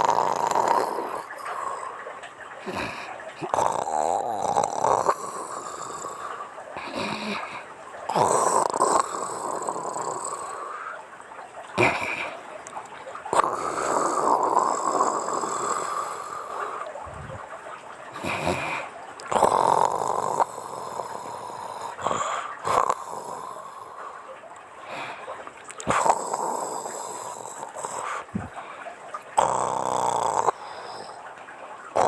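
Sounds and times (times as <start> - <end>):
woman snoring: 0.0 - 1.3, 6.9 - 10.6.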